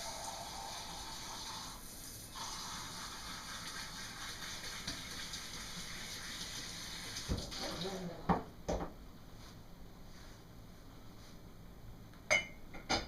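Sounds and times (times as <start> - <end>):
faucet water running: 0.0 - 8.2.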